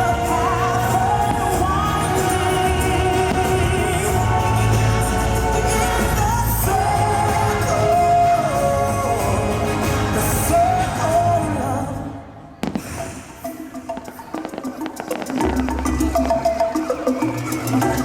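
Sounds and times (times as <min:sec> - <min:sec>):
firework bangs: 0:00.0 - 0:05.2, 0:12.6 - 0:17.2
pop song over loudspeakers: 0:00.0 - 0:18.0.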